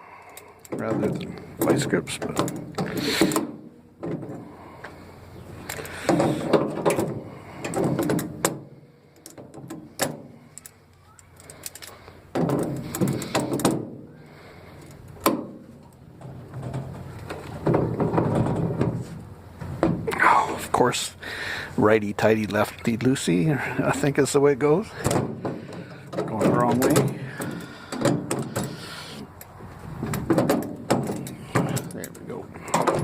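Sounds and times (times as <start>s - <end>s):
metal scraping and handling: 0.4s - 14.0s, 14.6s - 20.1s, 24.8s - 33.0s
metal clanks and knocks: 0.6s - 5.0s, 5.6s - 10.8s, 11.4s - 14.0s, 15.2s - 20.2s, 24.8s - 33.0s.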